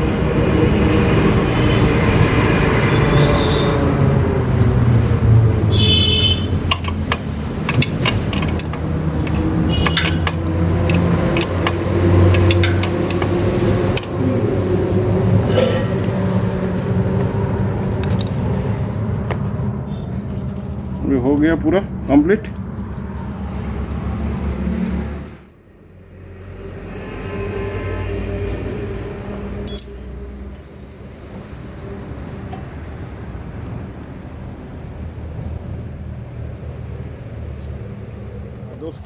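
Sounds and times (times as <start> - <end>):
engine and traffic noise: 0.0 - 39.0
metal tools clicking and tapping: 6.5 - 14.2, 29.6 - 30.2.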